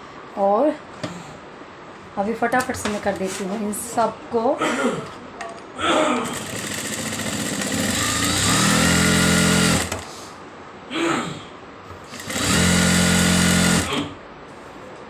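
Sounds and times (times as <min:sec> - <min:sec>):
sewing machine running: 0:06.2 - 0:10.0, 0:12.1 - 0:14.1.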